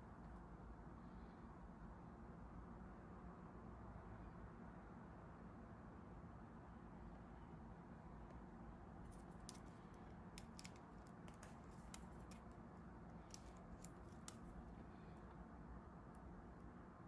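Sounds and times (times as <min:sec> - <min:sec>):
low steady hum: 0:00.0 - 0:17.0
faint light clicks: 0:13.2 - 0:14.6.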